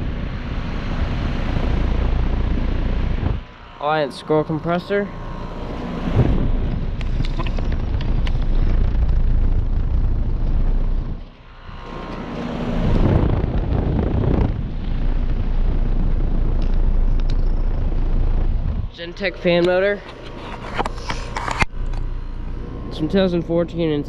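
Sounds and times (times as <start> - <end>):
compressor humming: 0.0 - 24.0
fan air rushing: 0.0 - 24.0.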